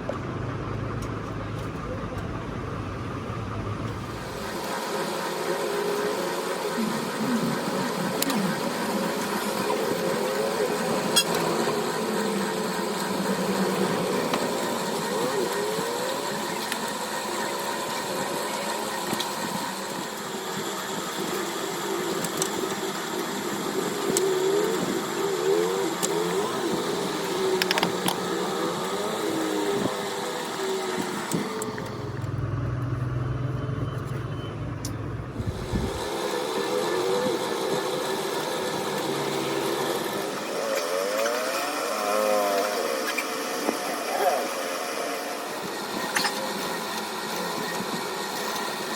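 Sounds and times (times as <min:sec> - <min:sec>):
low muffled engine rumble: 0:00.0 - 0:04.4, 0:31.6 - 0:36.0
vehicle engine and traffic: 0:00.0 - 0:04.8, 0:31.0 - 0:36.1
steady background hum: 0:00.0 - 0:48.9.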